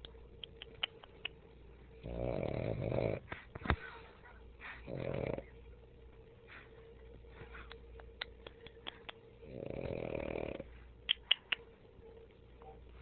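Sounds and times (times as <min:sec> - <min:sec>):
dog snoring breath: 0:02.0 - 0:04.0, 0:04.6 - 0:05.6, 0:09.4 - 0:10.8.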